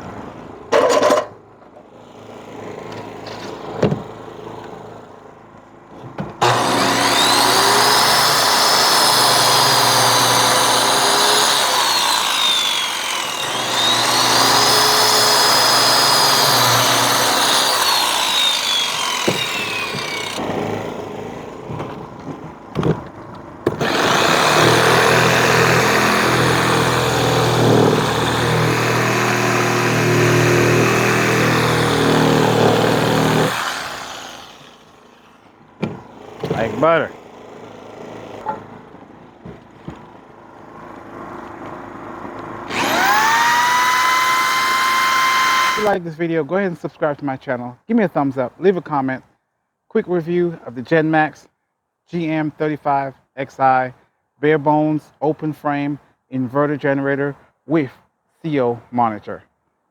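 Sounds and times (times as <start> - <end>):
power saw cutting pipe: 6.4 - 20.9, 23.7 - 35.4, 42.6 - 46.0.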